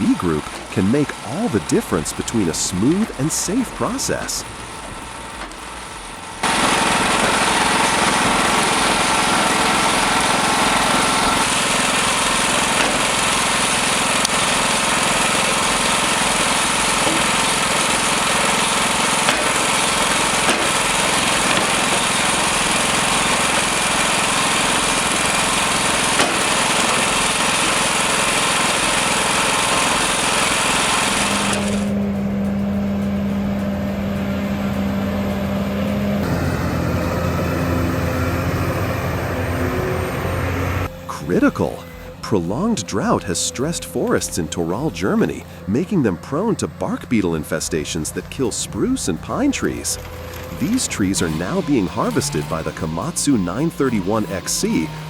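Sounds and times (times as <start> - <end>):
low machine hum: 0.0 - 55.0
wood-cutting machine running: 0.0 - 55.0.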